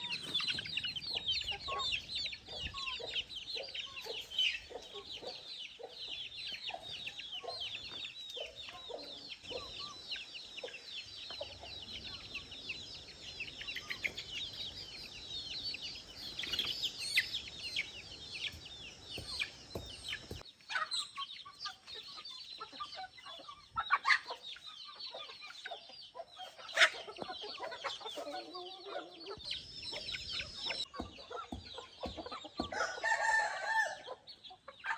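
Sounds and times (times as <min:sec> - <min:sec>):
chickens clucking: 0:00.0 - 0:34.9
rapid high-pitched chirping: 0:07.8 - 0:20.4.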